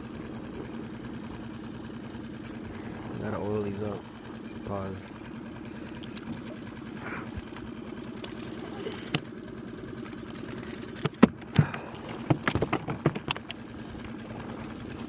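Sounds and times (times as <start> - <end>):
boat motor idling: 0.0 - 15.0
sharp knocks and clicks: 10.7 - 13.6.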